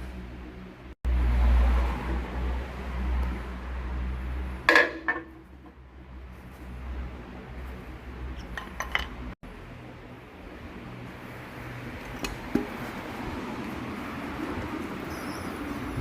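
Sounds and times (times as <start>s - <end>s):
metallic clunk and rattle: 4.7s - 5.8s, 8.4s - 9.2s.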